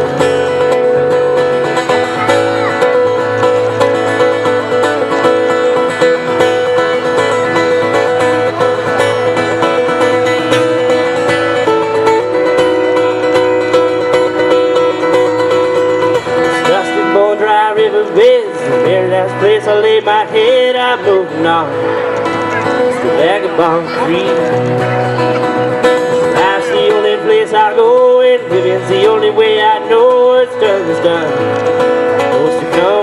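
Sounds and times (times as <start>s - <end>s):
plucked and strummed string instruments: 0.0s - 33.0s.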